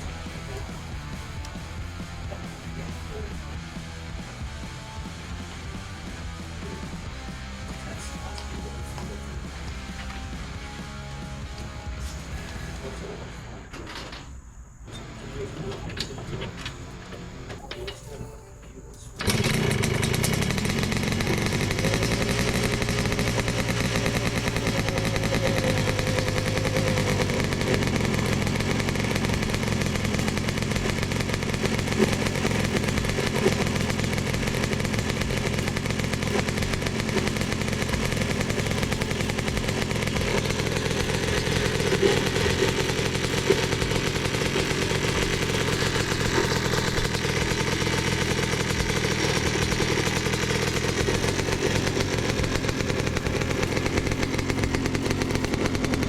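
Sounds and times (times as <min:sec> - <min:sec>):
two-stroke engine idling: 0:00.0 - 0:13.4, 0:19.2 - 0:56.0
person talking: 0:07.7 - 0:10.2, 0:17.5 - 0:19.9.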